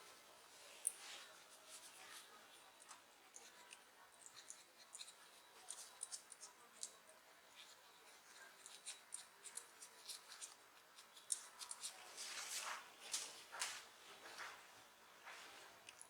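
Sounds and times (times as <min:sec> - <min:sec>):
light clicks of small parts and tools: 0:08.3 - 0:11.9.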